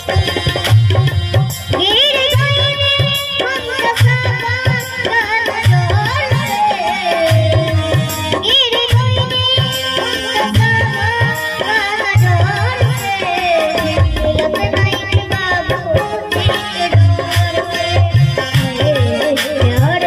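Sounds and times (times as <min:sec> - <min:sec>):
hand drum beat: 0:13.8 - 0:16.6.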